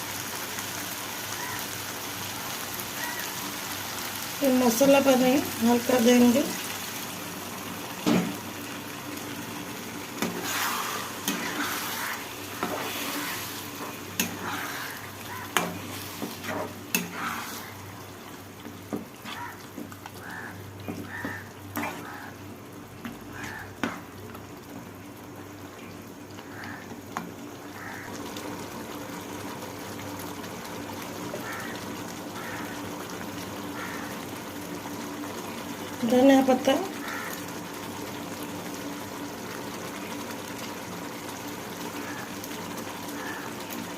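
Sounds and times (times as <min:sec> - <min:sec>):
food sizzling in a pan: 0:00.0 - 0:43.9
spoon scraping a pan: 0:10.2 - 0:17.8, 0:20.9 - 0:22.2.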